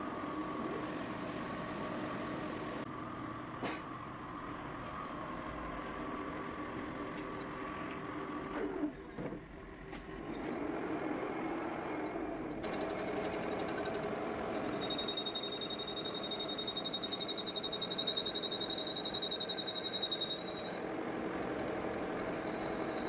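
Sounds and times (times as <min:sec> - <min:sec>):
high steady whistle: 0:14.6 - 0:20.8, 0:22.3 - 0:23.0.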